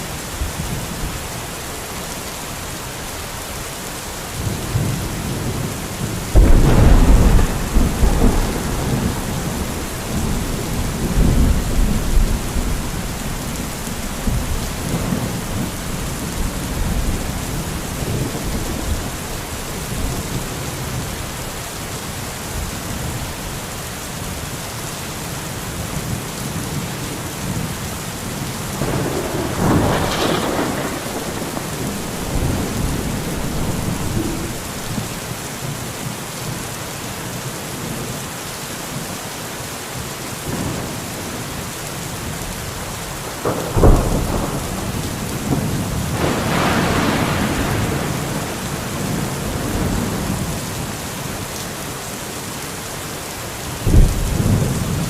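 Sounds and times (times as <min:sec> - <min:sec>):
heavy rain: 0:00.0 - 0:55.0
rolling thunder: 0:04.4 - 0:21.2, 0:28.7 - 0:35.3, 0:43.2 - 0:50.9, 0:53.8 - 0:55.0
sharp thunderclap: 0:04.8 - 0:19.1, 0:28.8 - 0:35.2, 0:43.3 - 0:50.5, 0:53.8 - 0:55.0.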